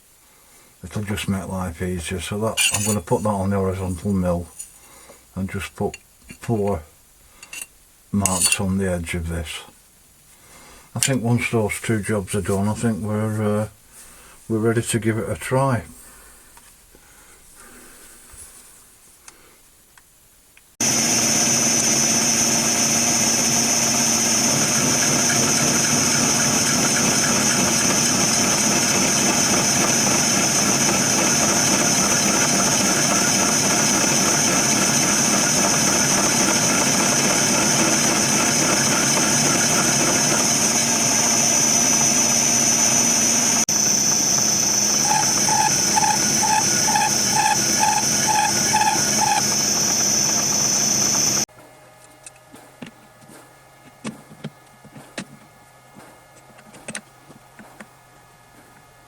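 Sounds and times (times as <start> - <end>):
workshop machinery whining: 2.6 - 3.5, 20.8 - 51.5
pulsing machine sound: 20.8 - 51.5.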